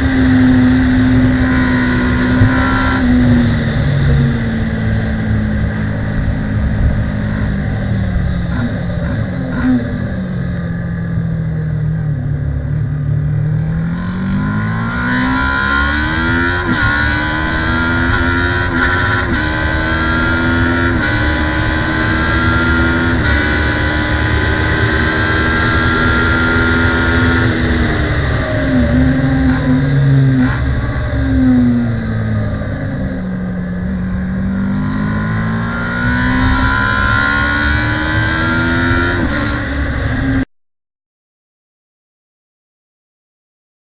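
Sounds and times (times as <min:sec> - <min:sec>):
motorcycle engine revving: 0:00.0 - 0:40.5
rush of wind: 0:13.6 - 0:40.4.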